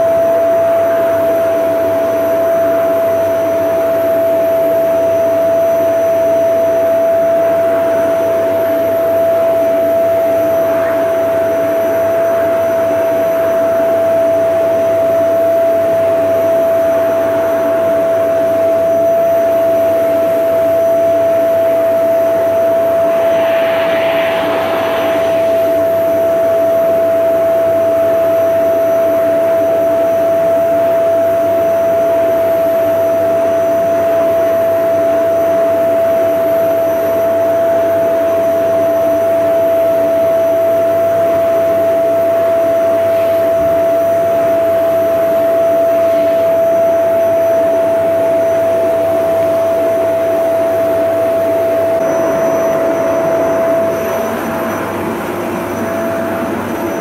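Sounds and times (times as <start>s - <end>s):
vacuum cleaner running: 21.8s - 26.9s, 51.7s - 57.0s
airy hiss: 22.0s - 27.1s.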